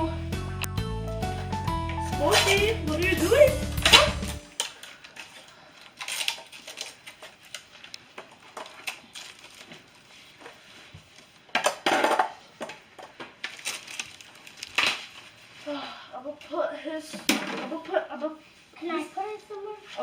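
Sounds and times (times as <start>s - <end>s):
packaging rustling: 3.8s - 11.5s, 13.1s - 15.6s
light clattering of items: 3.8s - 15.6s, 17.1s - 18.3s.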